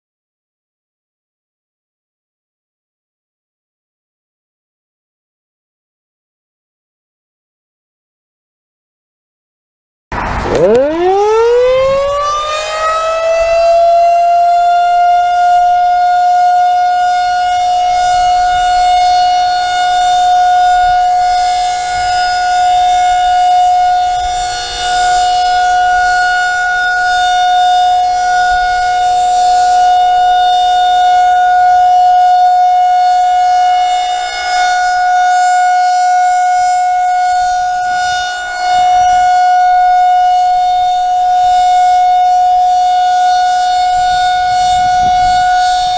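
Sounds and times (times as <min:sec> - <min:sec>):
tornado warning siren: 0:10.1 - 0:45.9.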